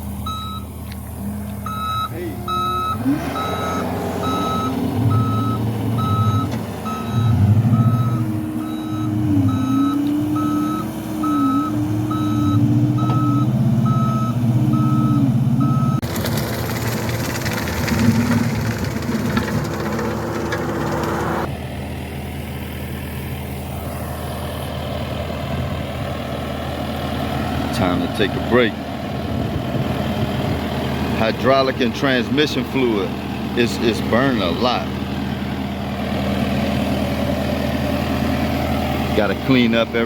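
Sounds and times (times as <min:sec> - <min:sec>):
heavy engine revving: 0:00.0 - 0:40.0
backup alarm beeping: 0:00.2 - 0:00.7, 0:01.6 - 0:16.0.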